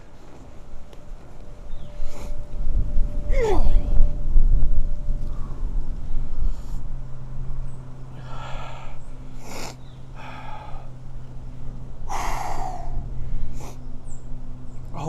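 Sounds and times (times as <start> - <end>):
low hum: 0.0 - 15.0
man breathing hard: 8.0 - 14.0.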